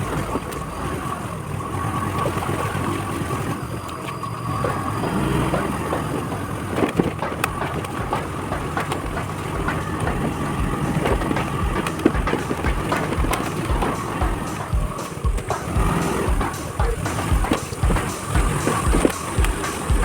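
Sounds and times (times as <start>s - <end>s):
scooter engine running: 0.0s - 20.0s
knocks and rattles: 5.4s - 20.0s
low thumps: 5.5s - 20.0s.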